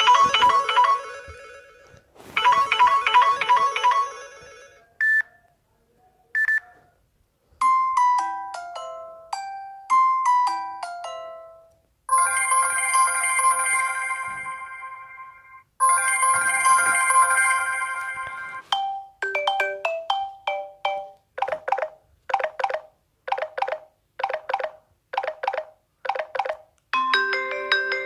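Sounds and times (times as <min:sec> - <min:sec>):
chiming ringtone: 0:00.0 - 0:04.9, 0:12.1 - 0:22.8, 0:23.4 - 0:28.0.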